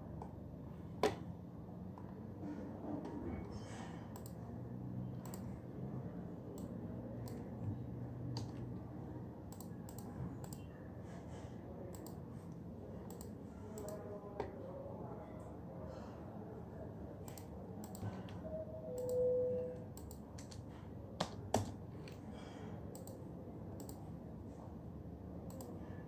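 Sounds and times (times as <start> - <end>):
low steady background hum: 0.0 - 26.0
computer keyboard typing: 4.1 - 4.4, 9.5 - 10.7, 20.0 - 22.2.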